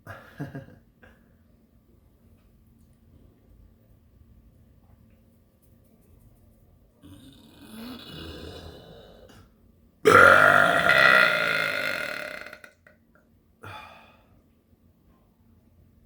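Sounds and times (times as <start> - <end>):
person burping: 7.0 - 9.4, 10.1 - 12.9.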